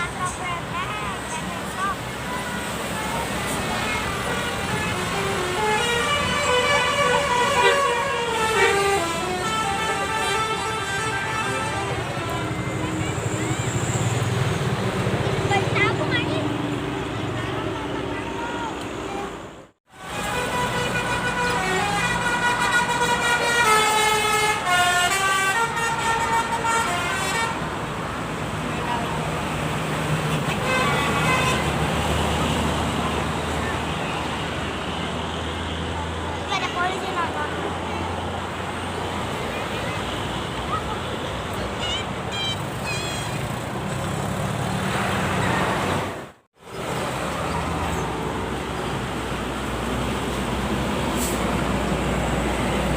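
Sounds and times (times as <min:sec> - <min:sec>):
passing traffic rumble: 0:00.0 - 0:52.9
multi-tone bus horn melody: 0:03.9 - 0:14.0, 0:20.0 - 0:27.8, 0:30.3 - 0:32.7.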